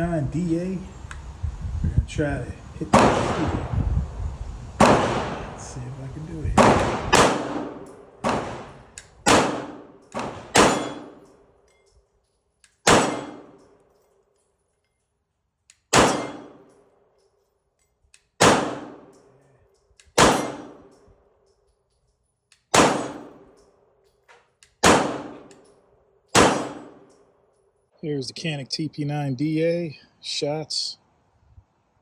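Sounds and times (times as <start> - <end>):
pistol shots: 2.8 - 3.7, 4.8 - 5.7, 6.5 - 11.3, 12.8 - 13.6, 15.9 - 16.6, 18.4 - 19.1, 20.1 - 20.9, 22.7 - 23.5, 24.8 - 25.5, 26.3 - 27.1
metallic clang of steel target: 6.6 - 11.4, 12.8 - 13.8, 15.9 - 16.8, 20.1 - 21.1, 22.7 - 23.7, 24.8 - 27.2.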